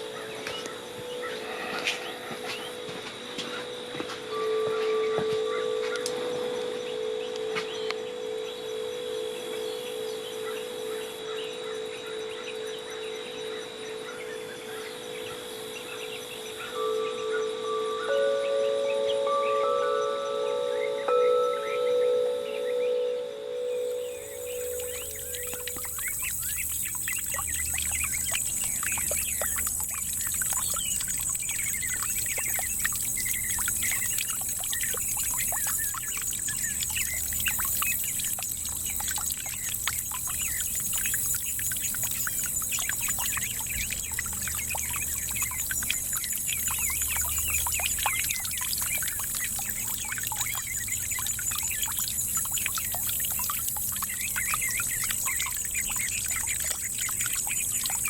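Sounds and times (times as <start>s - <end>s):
birds chirping: 0.0s - 58.0s
fountain trickling and splashing: 23.8s - 58.0s.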